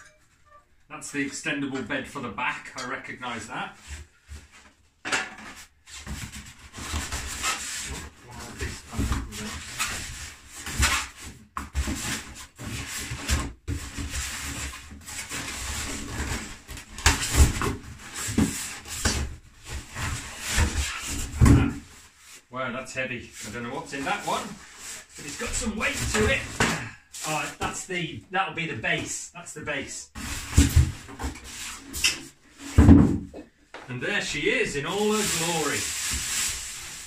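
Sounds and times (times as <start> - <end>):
packaging scraping and rubbing: 34.9 - 37.0.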